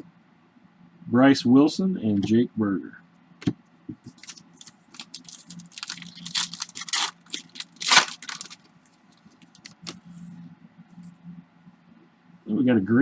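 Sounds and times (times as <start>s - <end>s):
foil wrapper tearing and crinkling: 4.1s - 8.7s.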